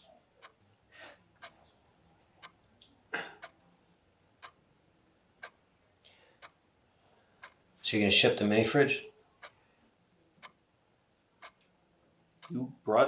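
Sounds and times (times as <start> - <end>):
clock ticking faintly: 0.0 - 13.0
person breathing: 0.9 - 1.3, 6.0 - 7.5.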